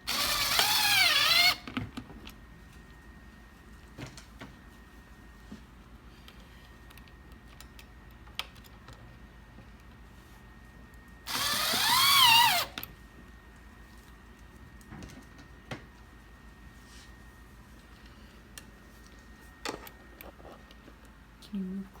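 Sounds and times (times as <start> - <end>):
power drill driving a screw: 0.0 - 1.7, 11.3 - 12.8.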